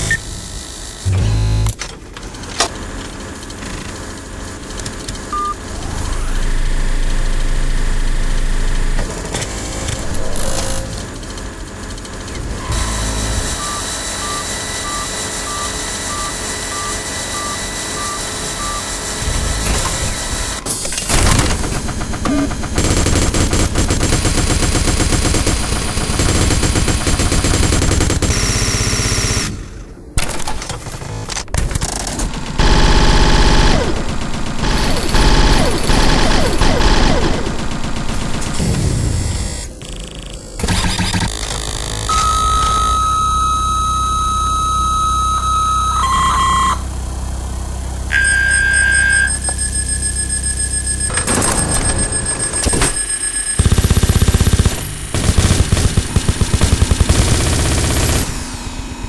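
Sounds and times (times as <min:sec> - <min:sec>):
mechanical noise and rumble: 0:00.0 - 0:59.0
short beeps: 0:12.6 - 0:19.0, 0:42.1 - 0:47.0, 0:48.1 - 0:53.7
machine-gun fire: 0:12.7 - 0:29.6, 0:30.2 - 0:39.7, 0:40.6 - 0:41.4, 0:51.2 - 0:58.8.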